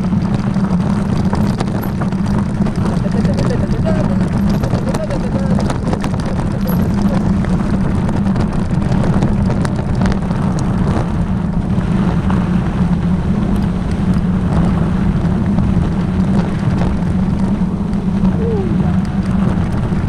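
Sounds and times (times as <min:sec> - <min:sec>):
vehicle engine humming: 0:00.0 - 0:20.0
light clicks and rattles: 0:00.2 - 0:11.1.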